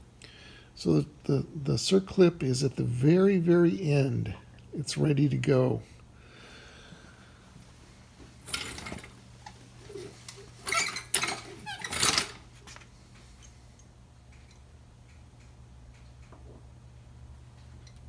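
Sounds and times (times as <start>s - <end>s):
faint steady hum: 0.0s - 18.0s
metal tool clinks and scrapes: 8.5s - 12.5s.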